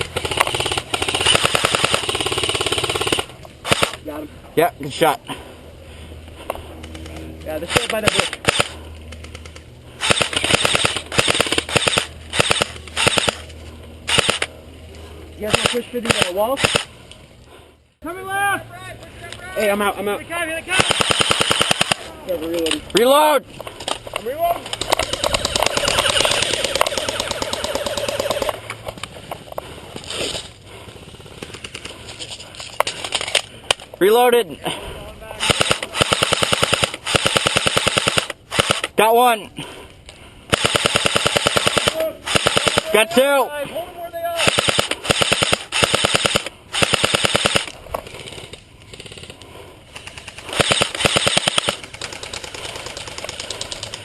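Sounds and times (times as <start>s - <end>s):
airsoft gun firing full-auto: 0.0s - 4.0s, 7.7s - 8.8s, 10.0s - 13.4s, 14.1s - 14.5s, 15.5s - 16.9s, 20.8s - 22.1s, 25.0s - 28.6s, 35.4s - 38.9s, 40.5s - 43.1s, 44.4s - 47.7s, 50.3s - 53.4s.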